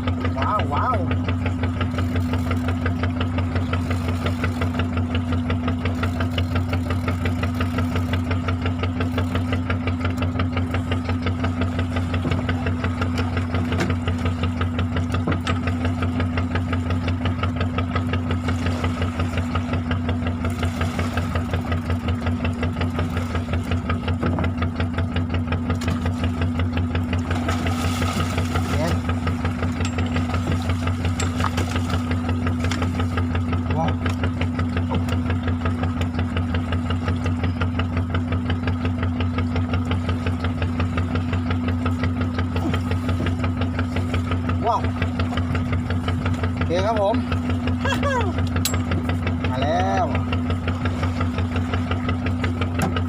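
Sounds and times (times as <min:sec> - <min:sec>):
boat engine pulsing hum: 0:00.0 - 0:53.0.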